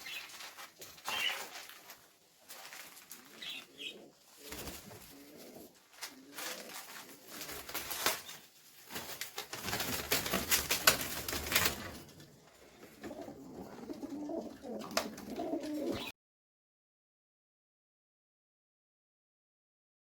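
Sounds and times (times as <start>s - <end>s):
rustling and clicking: 0.0s - 3.8s, 4.4s - 16.1s
pigeons cooing: 3.2s - 7.6s, 12.4s - 16.1s.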